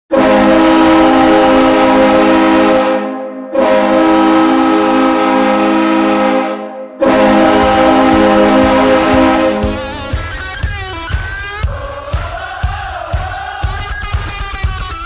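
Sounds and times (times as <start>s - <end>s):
goal horn blasts: 0.1s - 10.7s.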